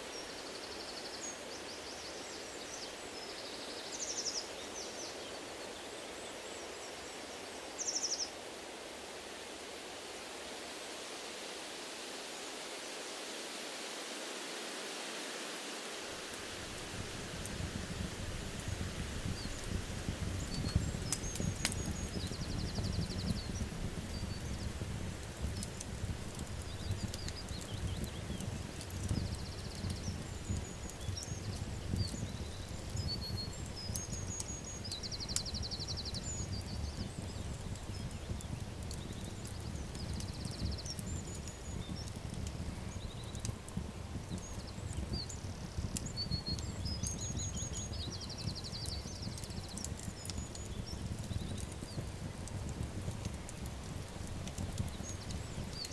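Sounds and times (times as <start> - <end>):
wood fire crackling and popping: 16.1 - 55.9
small birds chirping and trilling: 16.8 - 55.9.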